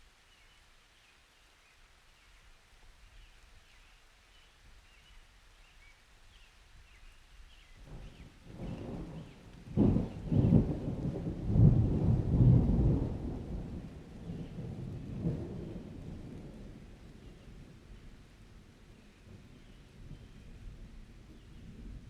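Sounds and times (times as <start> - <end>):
rolling thunder rumble: 7.8 - 18.1
thunder crack: 8.5 - 13.8.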